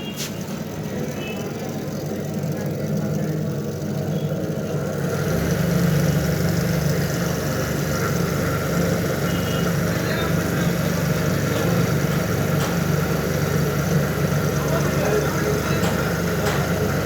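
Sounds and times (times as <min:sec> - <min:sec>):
low engine-like hum: 0:00.0 - 0:17.0.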